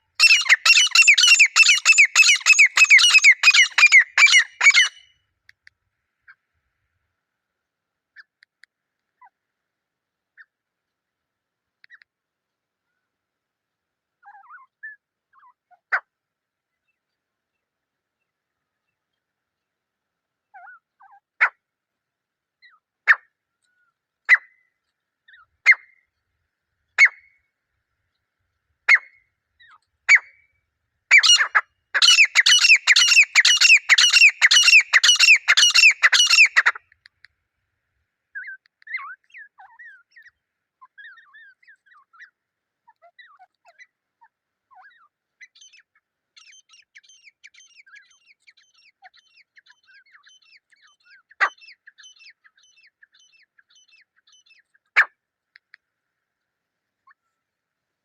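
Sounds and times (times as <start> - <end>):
francolins calling: 0.1 - 5.0, 31.1 - 36.8.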